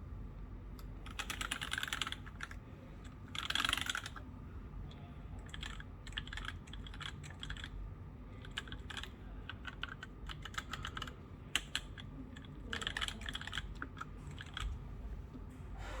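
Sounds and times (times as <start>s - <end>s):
mechanical keyboard typing: 1.1s - 2.6s, 3.3s - 4.2s, 5.4s - 7.7s, 8.4s - 14.8s.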